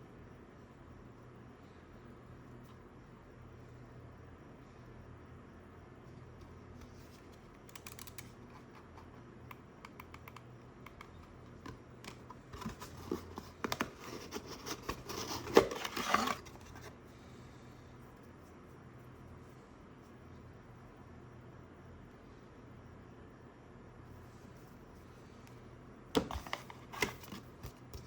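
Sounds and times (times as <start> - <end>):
packaging scraping and tearing: 12.6 - 16.9.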